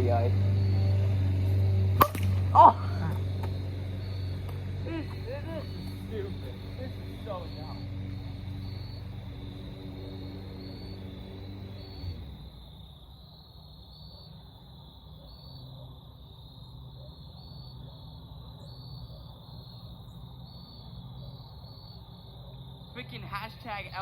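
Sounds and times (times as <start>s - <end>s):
low outdoor rumble: 0.0s - 13.5s
crickets trilling: 0.0s - 24.0s.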